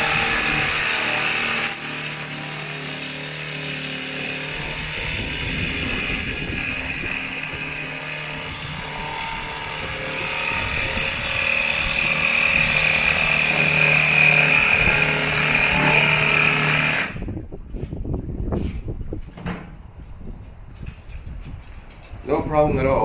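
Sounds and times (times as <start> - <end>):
jigsaw cutting plywood: 0.0 - 17.1.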